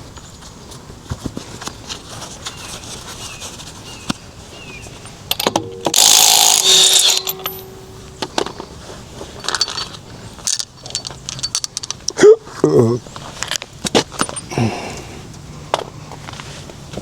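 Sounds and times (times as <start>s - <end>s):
metal tools clinking: 5.0s - 12.2s, 14.1s - 14.6s
impact wrench running: 5.3s - 8.7s.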